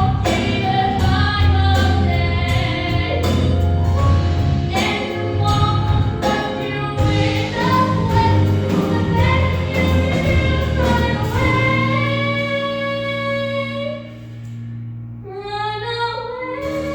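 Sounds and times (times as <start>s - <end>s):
backing track music: 0.0s - 16.9s
girl singing: 4.7s - 14.0s.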